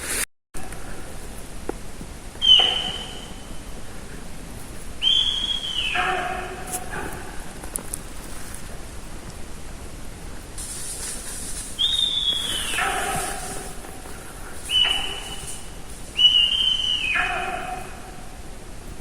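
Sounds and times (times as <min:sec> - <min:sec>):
deer whistling: 0:02.4 - 0:03.6, 0:05.0 - 0:07.4, 0:11.7 - 0:18.3.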